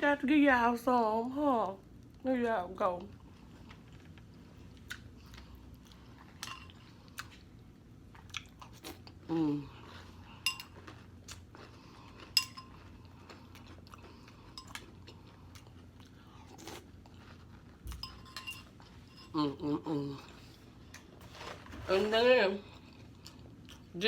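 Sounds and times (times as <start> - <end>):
crunching and chewing cereal: 3.1 - 19.1
spoon clinking against bowl: 10.4 - 10.7, 12.4 - 12.8, 18.0 - 19.4.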